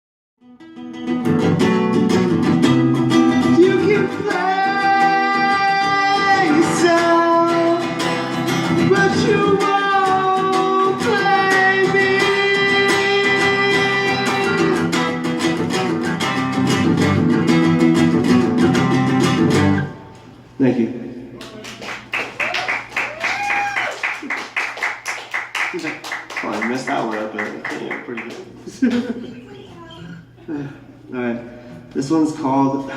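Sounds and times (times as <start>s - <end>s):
acoustic guitar picking and strumming: 0.4s - 20.6s.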